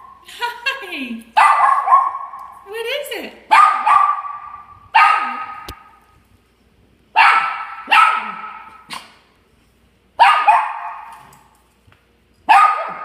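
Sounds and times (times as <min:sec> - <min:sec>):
dog barking: 0:01.4 - 0:02.4, 0:03.5 - 0:05.7, 0:07.2 - 0:09.1, 0:10.2 - 0:11.2, 0:12.5 - 0:13.0.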